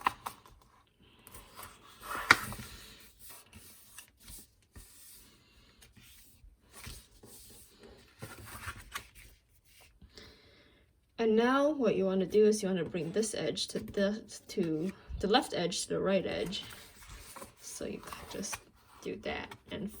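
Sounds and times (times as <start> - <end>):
paper rustling and crinkling: 5.7 - 10.0, 16.3 - 20.0.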